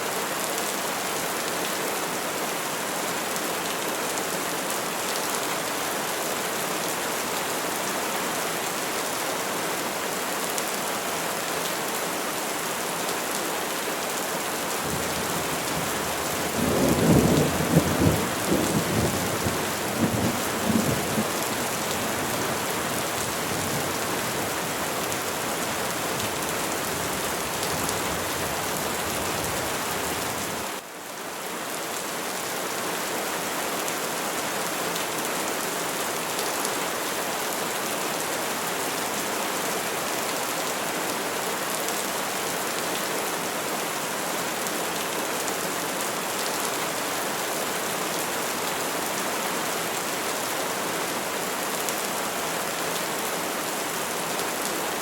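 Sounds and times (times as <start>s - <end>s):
rain falling on trees: 0.0s - 55.0s.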